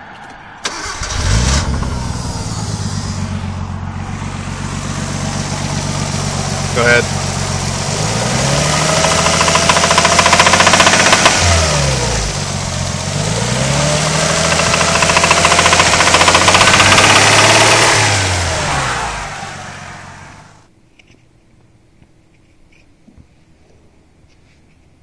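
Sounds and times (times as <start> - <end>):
car engine revving: 0.6 - 20.7
rapid engine knocking: 8.6 - 11.5, 14.0 - 17.8.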